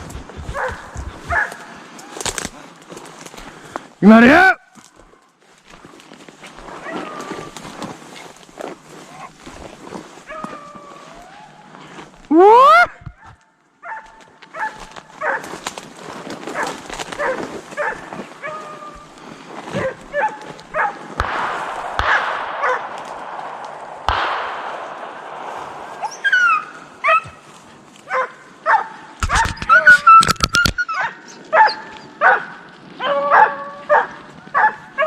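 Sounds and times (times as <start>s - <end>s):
dogs yelping: 0.0s - 1.7s, 26.0s - 27.4s
hounds barking and baying: 0.0s - 1.8s, 13.1s - 15.6s, 16.4s - 35.0s.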